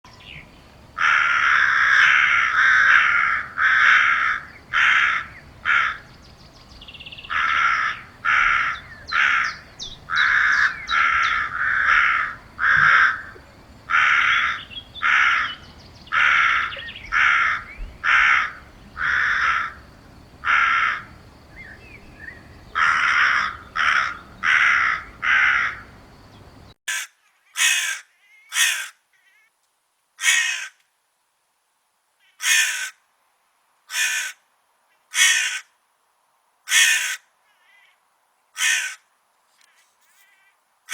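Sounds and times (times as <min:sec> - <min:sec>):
crows cawing: 0:01.0 - 0:06.1, 0:07.2 - 0:21.2, 0:22.8 - 0:26.0, 0:26.9 - 0:29.5, 0:30.2 - 0:30.8, 0:32.2 - 0:33.0, 0:33.9 - 0:35.8, 0:36.6 - 0:40.9.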